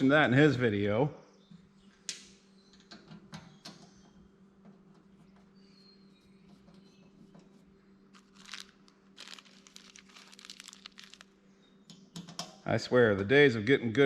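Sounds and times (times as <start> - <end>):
small parts clicking and rattling: 8.2 - 11.3.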